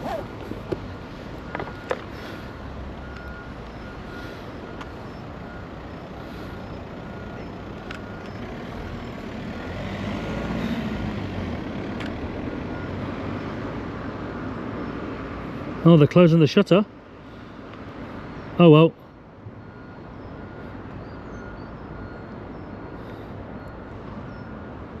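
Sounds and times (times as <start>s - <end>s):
electronic warning beeps: 3.0s - 9.2s, 19.6s - 24.8s.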